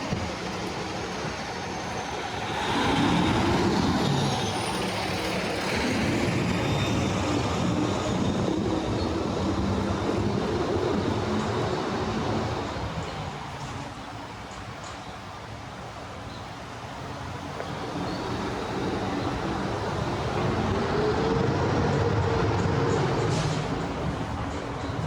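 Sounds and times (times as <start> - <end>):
large vehicle rumbling by: 17.4 - 25.0.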